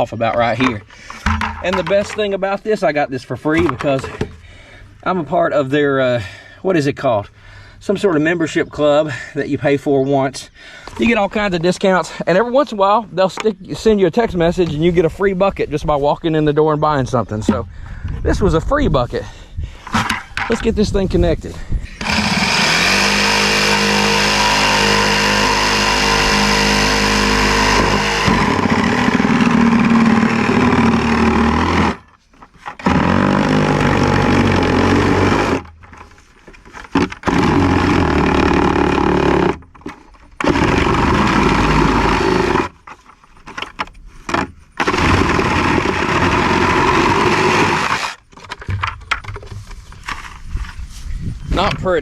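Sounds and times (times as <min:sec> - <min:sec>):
power tool cutting plastic: 0:21.8 - 0:35.8, 0:36.8 - 0:39.7, 0:40.4 - 0:42.9, 0:44.3 - 0:48.3.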